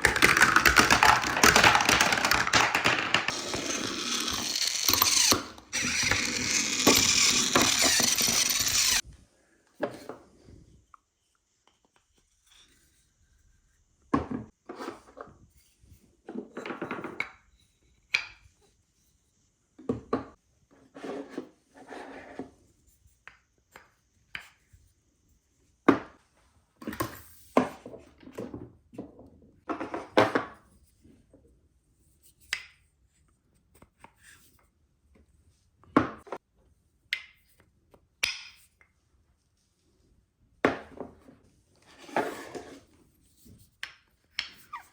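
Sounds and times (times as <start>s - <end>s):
marbles rolling on wooden track: 0.0s - 9.0s.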